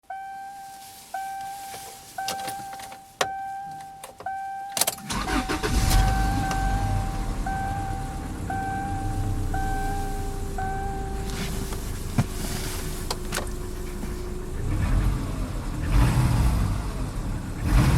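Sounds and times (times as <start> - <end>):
dashboard warning chime dinging: 0.0 - 15.8
car engine starting and idling: 0.7 - 17.9.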